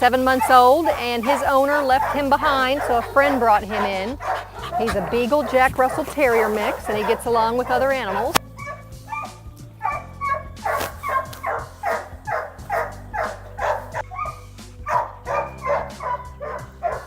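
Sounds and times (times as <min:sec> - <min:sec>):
dog barking: 0:00.1 - 0:17.0.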